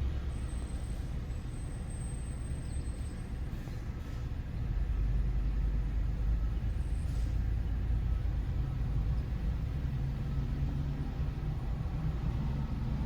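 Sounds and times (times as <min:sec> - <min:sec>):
engine low rumble: 0:04.5 - 0:13.0.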